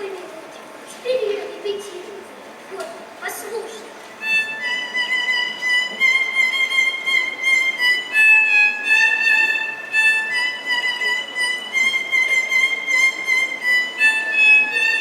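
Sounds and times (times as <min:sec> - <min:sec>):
instrumental melody of held notes: 0:04.2 - 0:15.0.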